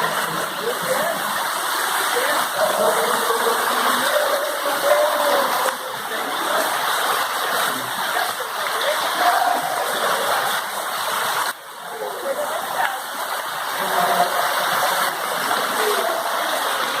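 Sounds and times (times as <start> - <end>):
heavy rain pouring: 0.0 - 17.0
rainwater splashing and running off: 0.0 - 17.0.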